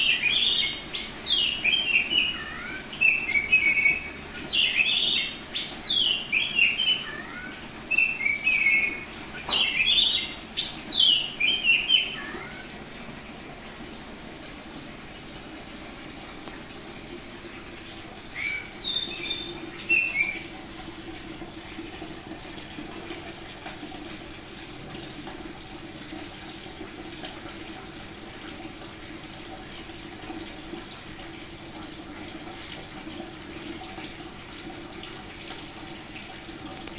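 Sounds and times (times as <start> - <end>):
bird whistling and warbling: 0.0 - 12.7, 18.3 - 20.5.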